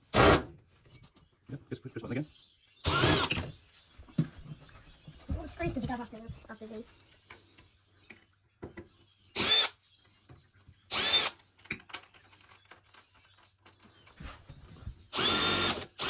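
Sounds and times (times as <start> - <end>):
electric screwdriver whine: 2.9 - 3.4, 15.2 - 16.0.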